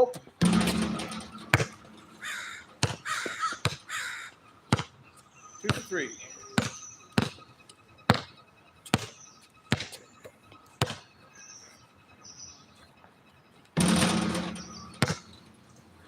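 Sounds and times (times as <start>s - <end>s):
basketball dribbling: 0.4s - 1.8s, 2.8s - 3.8s, 5.7s - 5.9s, 6.6s - 7.4s, 8.1s - 8.3s, 8.9s - 10.0s, 13.8s - 15.4s
ball clanging off hoop: 0.4s - 2.0s, 13.8s - 15.4s.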